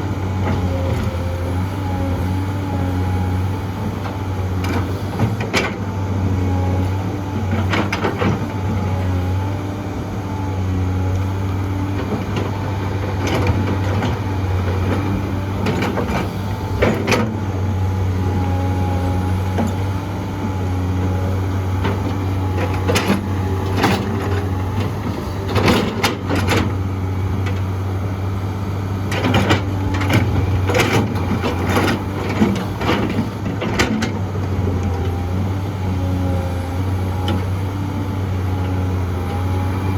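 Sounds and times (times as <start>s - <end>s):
excavator diesel engine: 0.0s - 39.9s
digging knocks and clatter: 11.9s - 18.0s, 21.6s - 27.7s, 29.0s - 35.3s.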